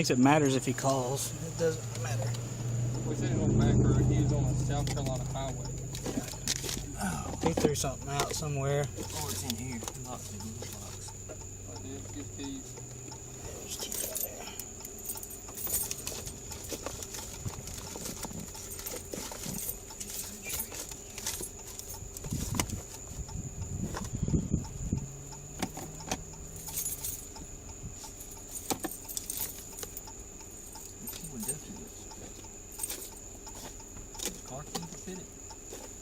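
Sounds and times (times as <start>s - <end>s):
keys jangling: 13.7s - 22.4s, 25.7s - 27.4s, 28.2s - 31.7s, 32.7s - 33.3s.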